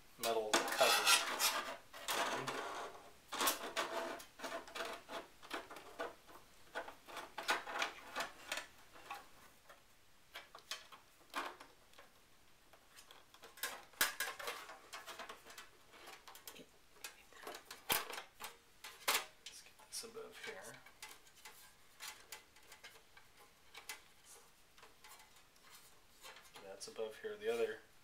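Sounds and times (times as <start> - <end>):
metal parts clicking and scraping: 0.2 - 6.1.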